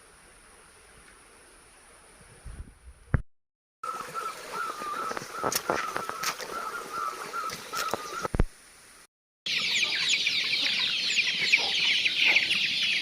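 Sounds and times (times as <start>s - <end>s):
chicks peeping: 9.5s - 13.0s.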